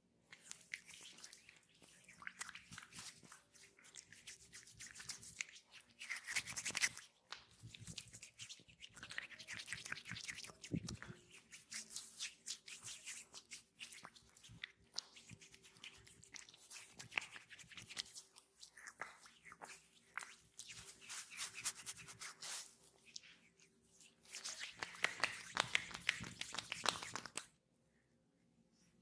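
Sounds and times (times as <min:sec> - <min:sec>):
hands rubbing oiled skin: 0:00.3 - 0:27.6.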